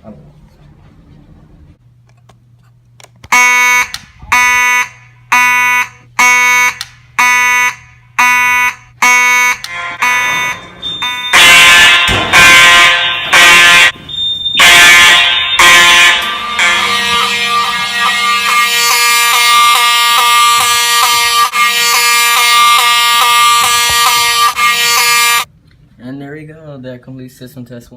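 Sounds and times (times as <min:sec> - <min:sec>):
buzzy fire alarm horn: 0:03.2 - 0:25.5
harsh alarm sound: 0:03.3 - 0:25.5.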